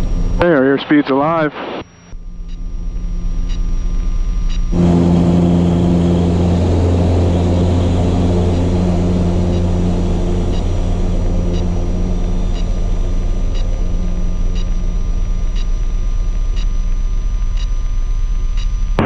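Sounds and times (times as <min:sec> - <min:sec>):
piston aircraft engine drone: 0:00.0 - 0:19.0
airflow rushing: 0:04.8 - 0:16.6.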